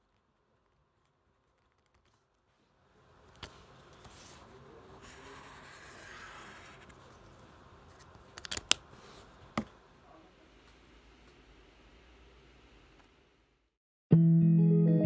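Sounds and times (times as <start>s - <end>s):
rustling and scraping on desk: 3.4s - 7.3s.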